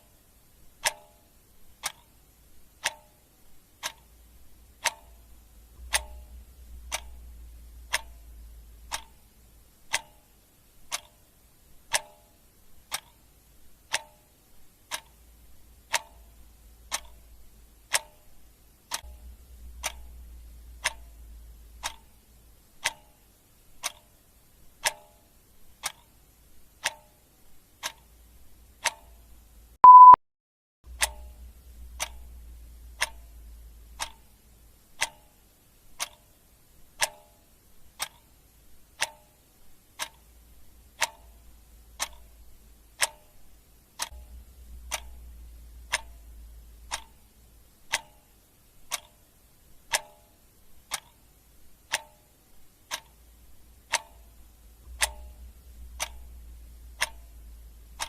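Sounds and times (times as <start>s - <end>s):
clock ticking: 0.0s - 30.2s, 30.9s - 58.0s
short high beep: 29.8s - 30.2s.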